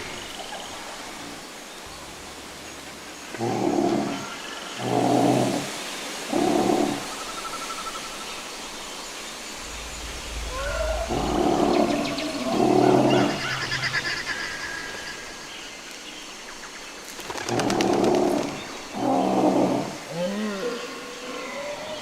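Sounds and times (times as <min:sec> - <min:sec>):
deep rumble: 0:09.3 - 0:15.2
dinosaur roars: 0:09.6 - 0:14.2.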